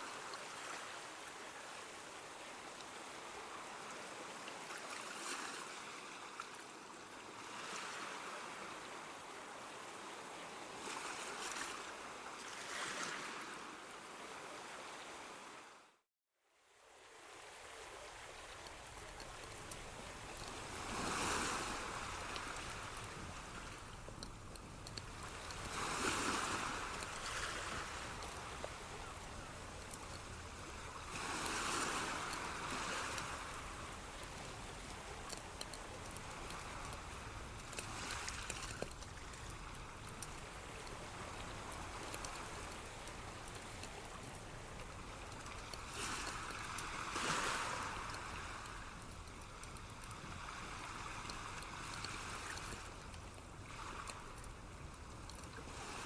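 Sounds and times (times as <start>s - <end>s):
rushing water: 0.0s - 15.8s, 16.7s - 56.0s.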